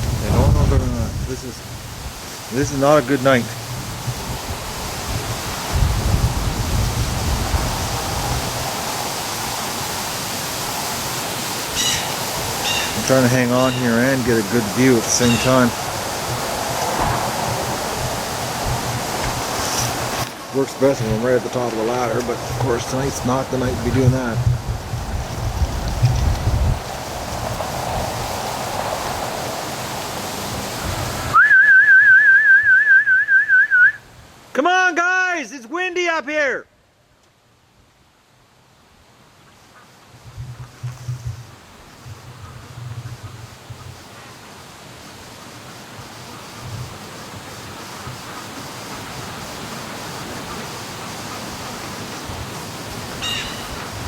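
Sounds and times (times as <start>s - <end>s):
wind gusts buffeting microphone: 0.0s - 31.4s, 40.1s - 54.0s
strong wind blowing: 0.0s - 32.3s, 46.0s - 54.0s
warbling duck-calling whistle: 11.8s - 13.1s, 31.3s - 34.0s, 53.2s - 53.8s.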